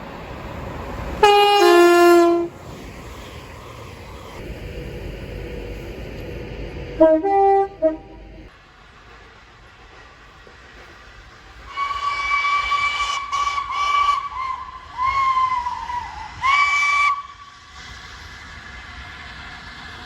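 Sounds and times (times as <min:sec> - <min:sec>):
train horn blasts: 0:01.2 - 0:02.5, 0:07.0 - 0:08.4.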